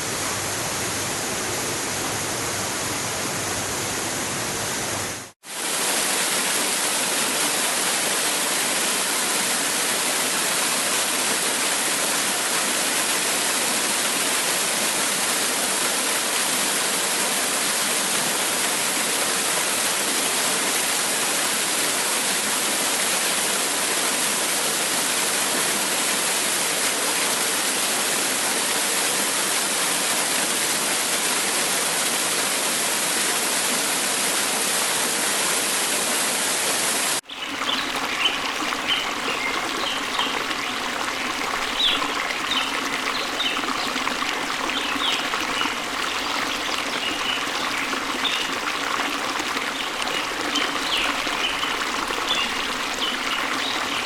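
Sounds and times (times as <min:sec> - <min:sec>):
waterfall rushing: 0:34.4 - 0:54.0.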